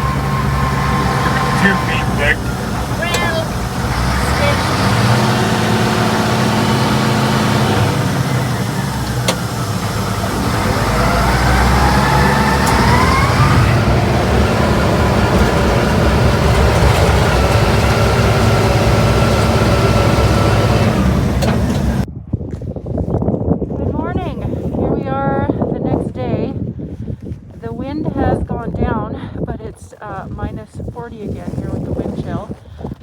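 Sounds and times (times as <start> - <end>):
vehicle engine running with whine: 0.0 - 22.1.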